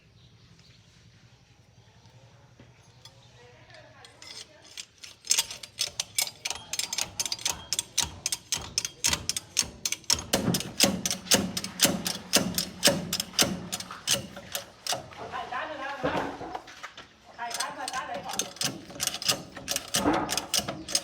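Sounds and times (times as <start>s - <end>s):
ratchet wrench clicking: 4.0s - 15.2s, 17.5s - 21.0s.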